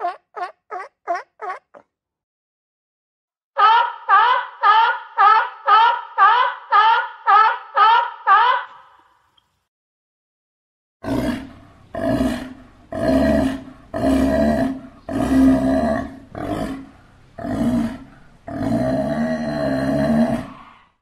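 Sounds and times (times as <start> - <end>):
sea lion barking: 0.0 - 1.8, 3.6 - 8.8.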